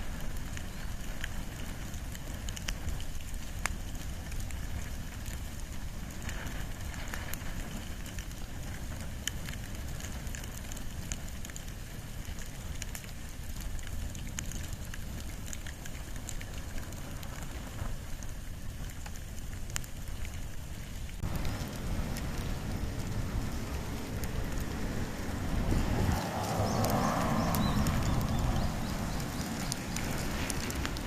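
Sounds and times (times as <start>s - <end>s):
fire crackling and snapping: 0.0s - 31.0s
low rumble of flame: 0.0s - 31.0s.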